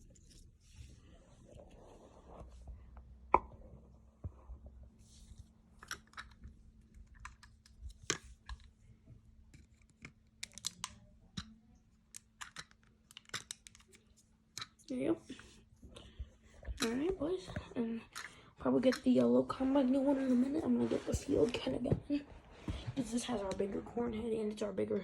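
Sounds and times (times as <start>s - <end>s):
toy vehicles clicking and tapping: 12.2s - 14.0s.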